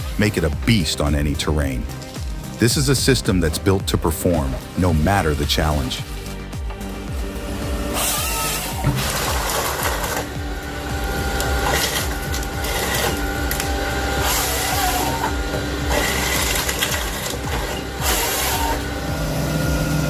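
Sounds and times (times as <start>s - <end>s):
bursts of harsh machine noise: 4.5s - 20.0s
heavy machine engine hum: 6.6s - 20.0s
rapid mechanical rattle: 6.7s - 20.0s.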